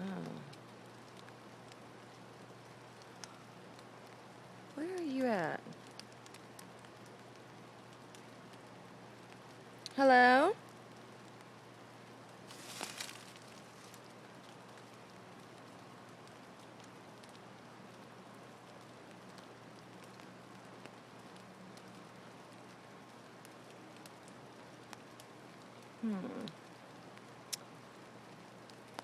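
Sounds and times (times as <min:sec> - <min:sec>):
steady rain falling: 0:00.0 - 0:29.0
short vocal sound: 0:26.0 - 0:26.5.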